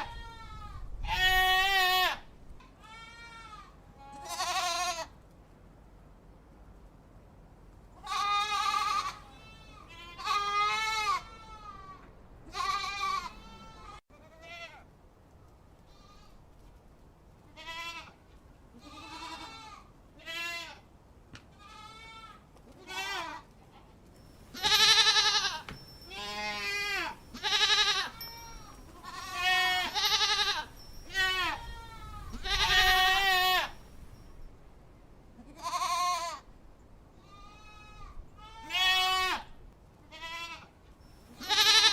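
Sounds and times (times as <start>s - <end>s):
goats bleating: 8.0s - 14.7s, 21.6s - 23.4s, 24.5s - 33.8s, 37.3s - 39.4s, 41.4s - 41.9s.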